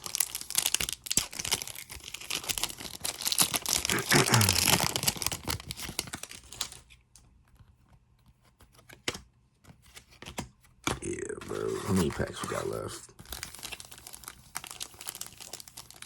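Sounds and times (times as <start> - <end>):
foil wrappers tearing and crinkling: 0.0 - 6.9, 11.0 - 16.0.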